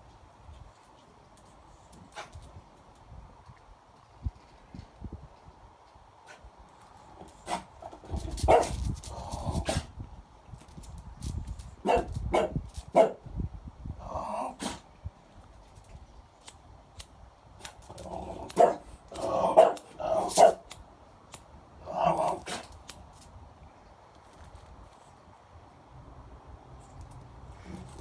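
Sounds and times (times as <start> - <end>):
dog sneezing: 14.6 - 14.8, 22.2 - 22.8.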